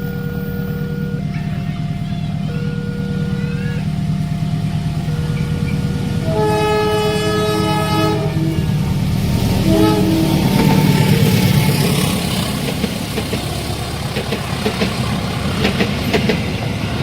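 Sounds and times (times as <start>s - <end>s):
two-note crossing alarm: 0.0s - 3.9s
locomotive horn: 0.0s - 12.2s
diesel locomotive engine rumbling: 0.0s - 17.0s.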